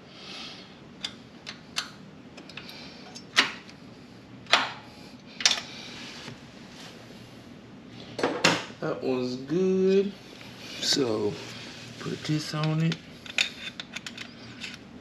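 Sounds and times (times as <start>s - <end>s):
metal tools clicking and clanking: 12.5s - 14.8s.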